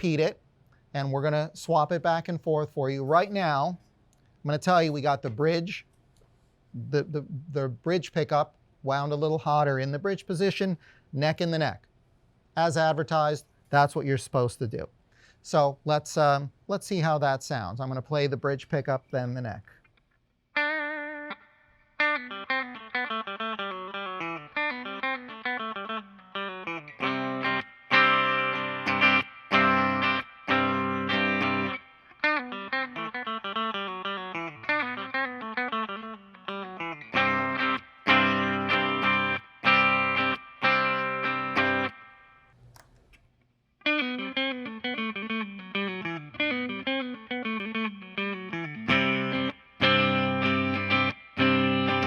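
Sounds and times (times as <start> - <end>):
clean electric guitar notes: 20.6 - 42.5, 43.8 - 52.0.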